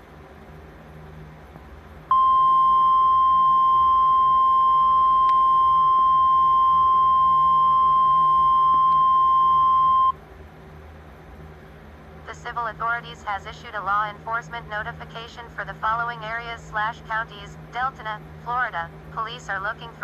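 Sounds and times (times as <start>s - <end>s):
loud steady high alert tone: 2.1s - 10.2s.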